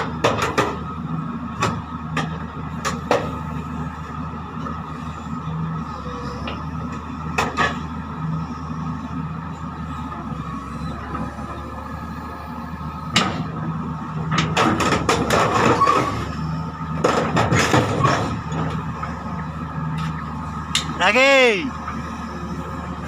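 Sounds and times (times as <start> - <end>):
diesel engine running: 0.0 - 23.0
heavy metal clanks and rattling: 14.3 - 18.9.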